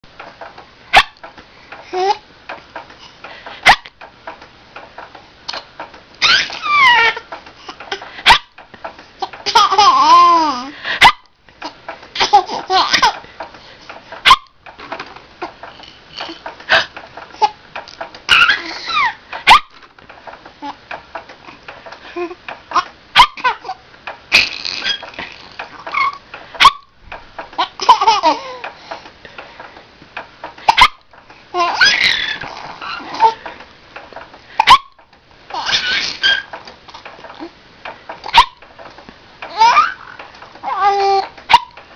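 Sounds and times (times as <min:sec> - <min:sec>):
baby laughing and giggling: 0:01.8 - 0:02.2, 0:05.5 - 0:08.4, 0:09.2 - 0:13.2, 0:16.2 - 0:17.6, 0:18.3 - 0:19.6, 0:21.5 - 0:26.7, 0:27.5 - 0:28.7, 0:31.5 - 0:33.4, 0:35.5 - 0:37.5, 0:39.5 - 0:41.7.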